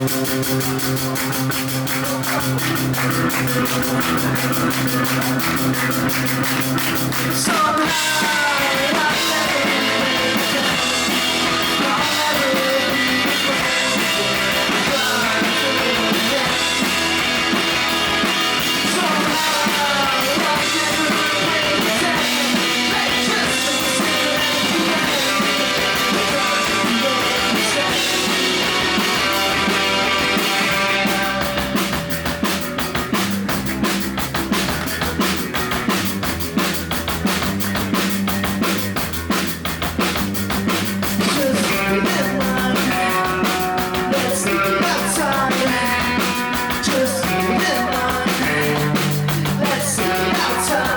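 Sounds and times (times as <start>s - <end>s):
drum kit: 0.0s - 50.9s
rock band playing live: 0.0s - 50.9s.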